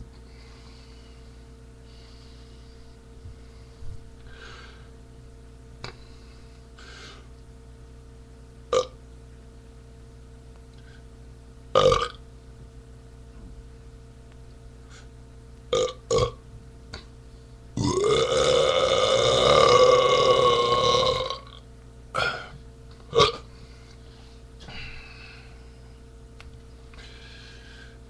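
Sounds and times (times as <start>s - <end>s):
man belching: 8.7s - 9.0s, 11.8s - 12.2s, 15.7s - 16.4s, 17.8s - 21.6s, 22.2s - 23.4s.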